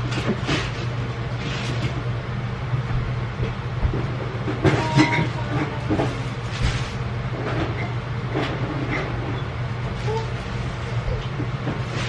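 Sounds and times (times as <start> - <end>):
steady low hum: 0.0 - 12.0
groceries rustling and knocking: 2.9 - 9.1, 11.1 - 12.0.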